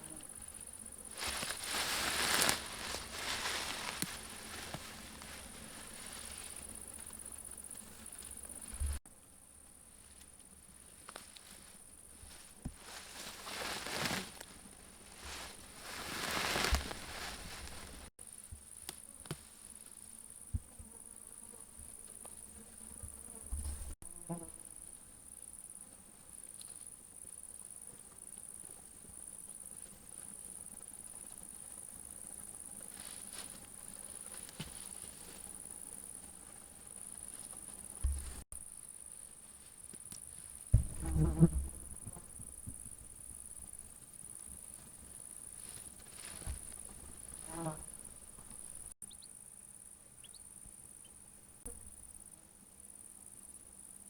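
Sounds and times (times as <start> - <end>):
fly buzzing: 0.0 - 9.0, 40.7 - 43.7, 46.3 - 49.2
field insects chirring: 0.0 - 54.0
soft rustling swishes: 15.0 - 18.1.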